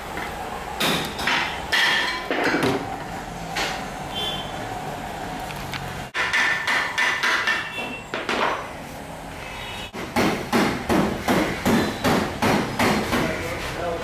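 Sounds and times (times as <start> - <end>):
hammer blows: 9.9 - 13.4.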